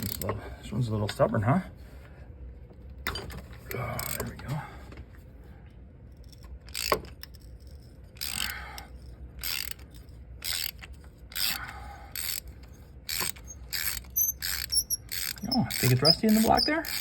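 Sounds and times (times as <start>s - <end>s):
socket ratchet clicking: 6.2s - 17.0s.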